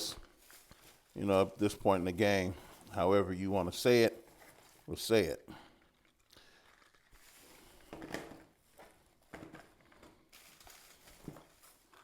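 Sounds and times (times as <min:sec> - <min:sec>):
packaging knocks and rustles: 0:06.8 - 0:12.0.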